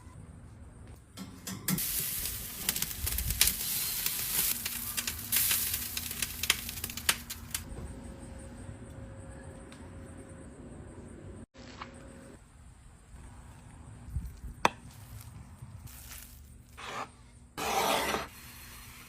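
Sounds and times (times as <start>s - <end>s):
food sizzling and crackling: 1.7s - 7.7s.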